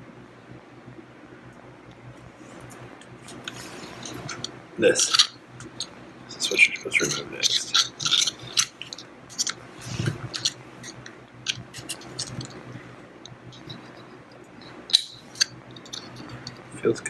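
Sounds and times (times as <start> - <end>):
metal parts clicking and scraping: 3.2 - 12.8, 13.5 - 17.0.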